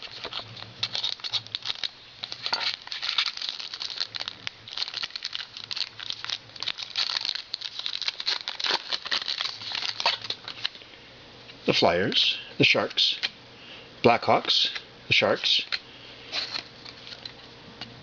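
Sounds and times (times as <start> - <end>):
cards rustling: 0.0 - 10.8
wrapper crinkling and tearing: 0.0 - 10.8.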